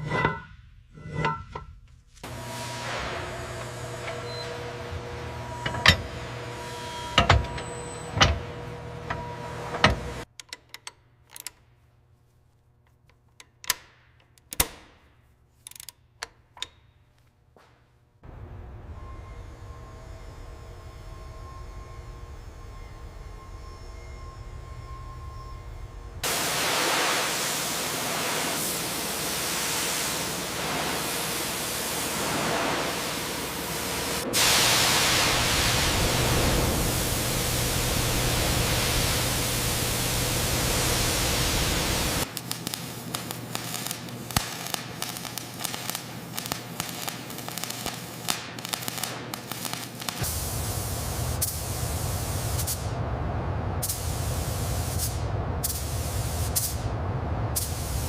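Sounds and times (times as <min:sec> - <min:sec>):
steady hissing noise: 0:18.3 - 0:58.0.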